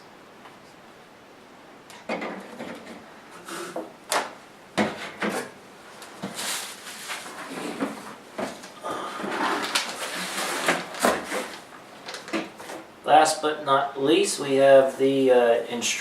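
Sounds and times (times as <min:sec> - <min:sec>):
rustling: 0:05.0 - 0:12.9.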